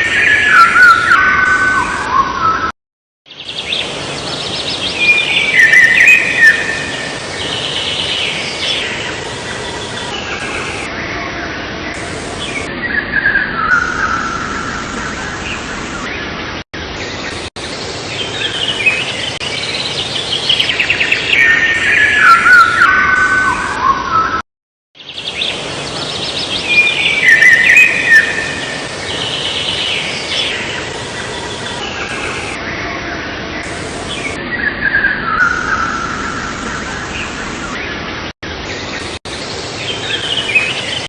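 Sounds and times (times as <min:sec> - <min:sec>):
songbirds chirping: 0:00.0 - 0:02.7, 0:03.3 - 0:24.4, 0:25.0 - 0:41.0
steady hiss: 0:33.6 - 0:34.4.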